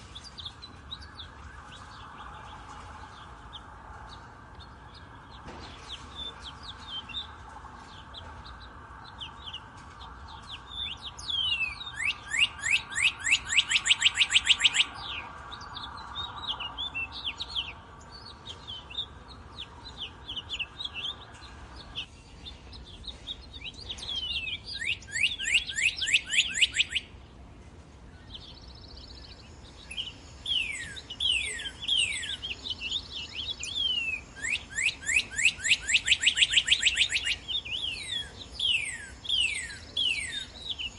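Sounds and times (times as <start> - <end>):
bird chirps: 0.0 - 27.2, 28.1 - 40.9
bird singing whistled notes: 10.3 - 27.1, 28.2 - 40.9.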